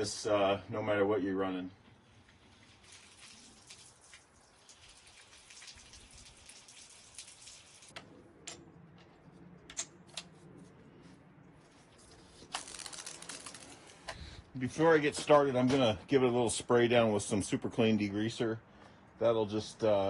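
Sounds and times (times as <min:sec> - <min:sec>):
water spattering hiss: 0:02.5 - 0:07.9.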